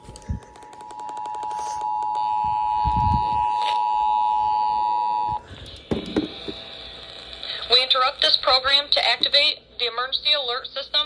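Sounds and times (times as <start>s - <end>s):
two-tone alarm signal: 0.9s - 5.4s.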